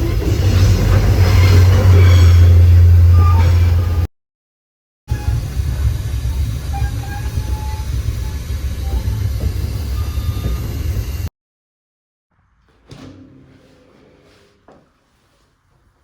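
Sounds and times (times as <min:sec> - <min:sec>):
train running rumble: 0:00.0 - 0:04.1, 0:05.1 - 0:11.3.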